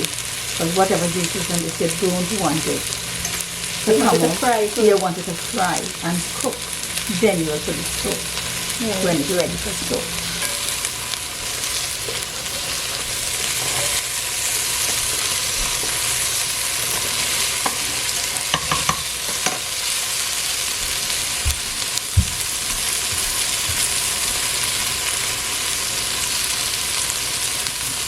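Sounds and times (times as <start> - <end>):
okra sizzling in oil: 0.0 - 28.0.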